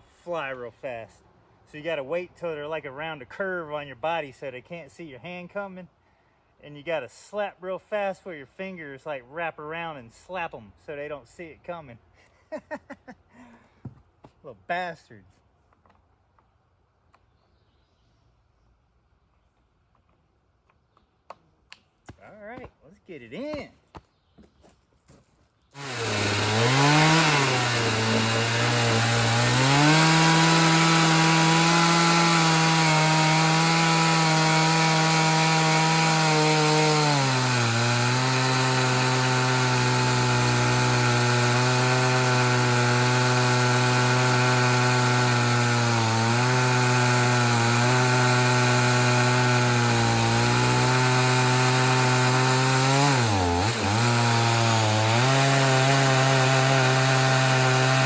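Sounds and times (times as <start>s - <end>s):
chainsaw cutting log: 25.7s - 58.0s.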